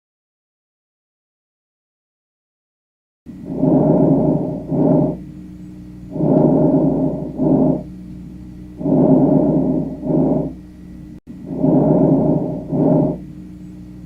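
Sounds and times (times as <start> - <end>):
faint steady hum: 3.3 - 14.0
lung breath sounds: 3.4 - 5.3, 6.0 - 8.0, 8.8 - 10.6, 11.3 - 13.3.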